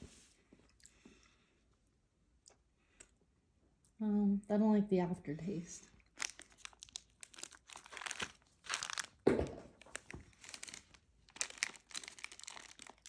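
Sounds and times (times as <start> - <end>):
plastic wrappers crinkling: 5.8 - 13.0.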